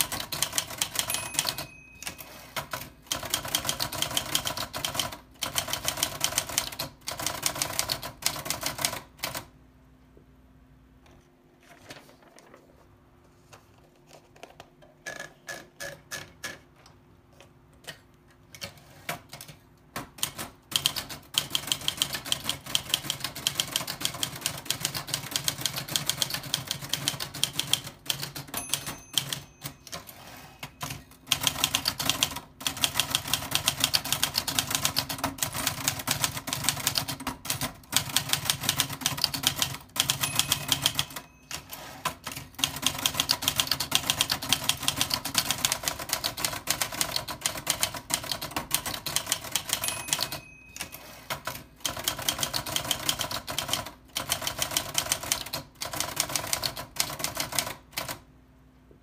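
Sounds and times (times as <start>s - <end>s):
typewriter key strikes: 0.0s - 8.9s, 24.8s - 35.5s, 38.0s - 57.6s.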